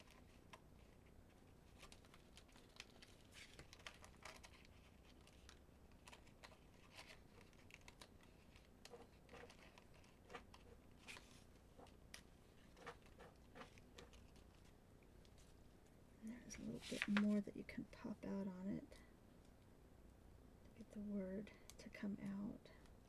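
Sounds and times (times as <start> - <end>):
paper crinkling and snapping: 0.0 - 15.6, 16.5 - 17.4.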